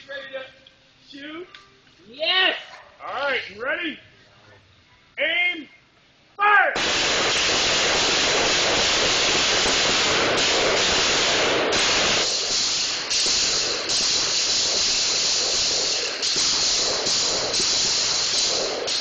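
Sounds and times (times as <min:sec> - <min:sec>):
loud steady hiss: 0:05.1 - 0:19.0.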